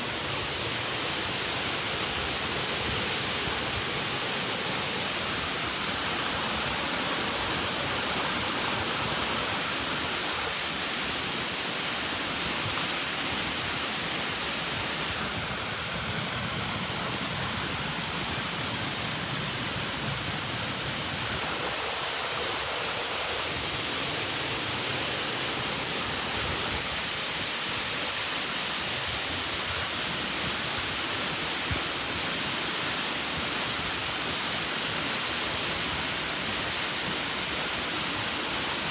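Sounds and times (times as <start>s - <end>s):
waterfall roaring: 0.0s - 38.9s.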